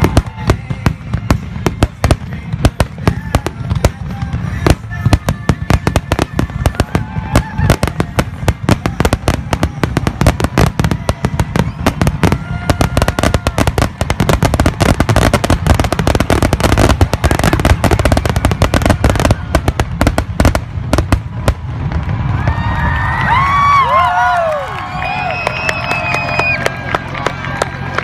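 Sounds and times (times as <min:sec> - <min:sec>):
fireworks bangs and crackles: 0:00.0 - 0:28.0.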